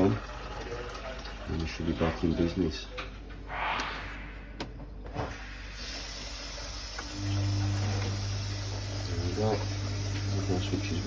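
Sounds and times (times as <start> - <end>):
boiler hiss: 5.2 - 11.0
boiler humming: 5.7 - 11.0.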